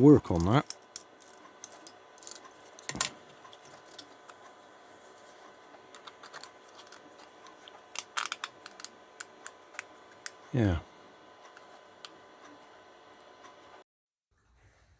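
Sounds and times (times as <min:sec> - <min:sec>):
plastic parts clicking and scraping: 0:00.2 - 0:04.4, 0:05.9 - 0:10.4.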